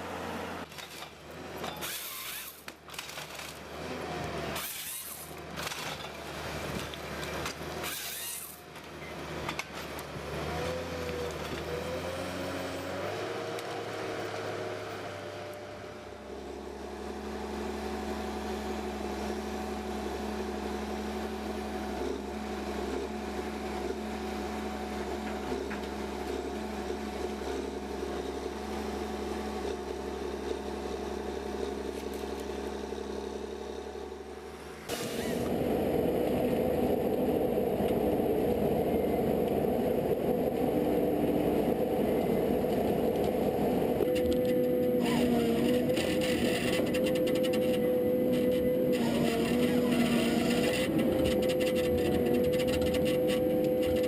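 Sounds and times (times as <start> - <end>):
machine engine running: 16.1 - 54.0.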